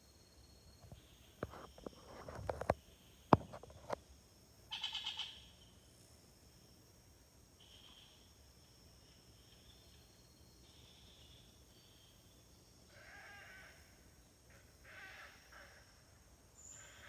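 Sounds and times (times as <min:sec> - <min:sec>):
high insect drone: 0:00.1 - 0:17.0
brief rustle: 0:00.8 - 0:02.8.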